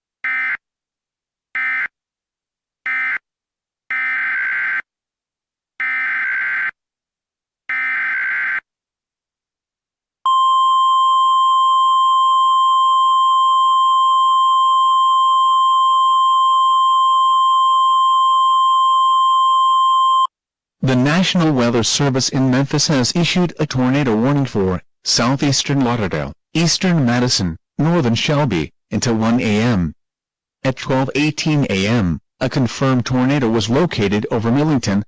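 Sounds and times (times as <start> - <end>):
steady alarm tone: 10.3 - 20.3.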